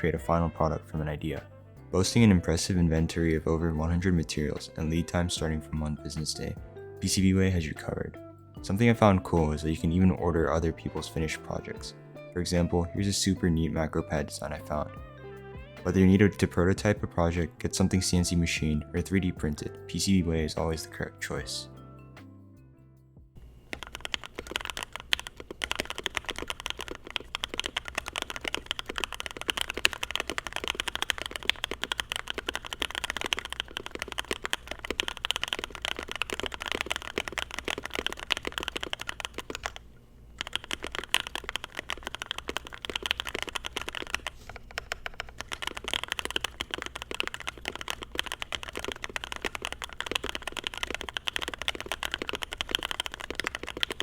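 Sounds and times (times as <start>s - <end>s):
fast mechanical keyboard typing: 23.7s - 39.8s, 40.4s - 54.0s.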